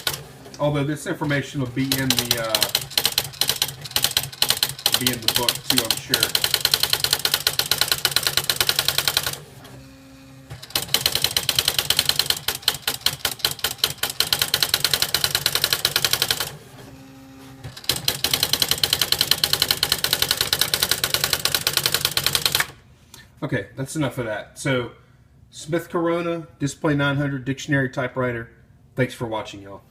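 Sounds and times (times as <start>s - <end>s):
typewriter hum: 0.0s - 22.8s
typewriter daisy wheel strikes: 1.8s - 9.4s, 10.6s - 16.5s, 17.8s - 22.7s.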